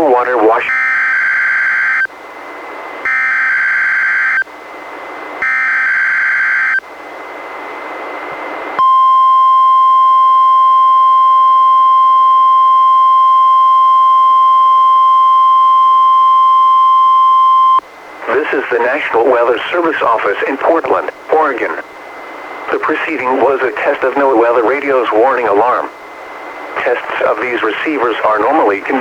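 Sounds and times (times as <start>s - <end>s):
radio hiss: 0.0s - 0.8s, 18.1s - 29.0s
steady warning alarm tone: 0.0s - 29.0s.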